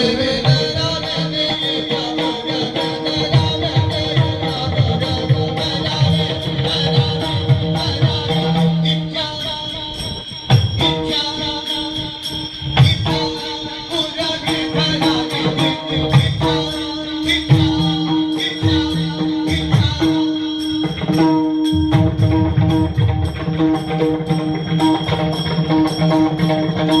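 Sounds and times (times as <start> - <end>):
jingling tambourine-like percussion: 0.0 - 27.0
drum strokes: 10.1 - 27.0.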